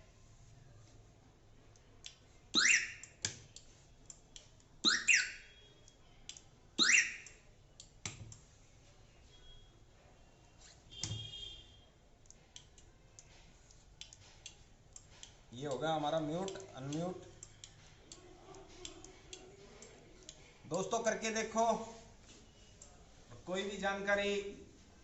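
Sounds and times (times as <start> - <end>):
short beep: 2.6 - 3.0, 6.8 - 7.2
car alarm siren chirps: 2.6 - 3.2, 4.8 - 5.9, 6.8 - 7.5, 10.9 - 11.9.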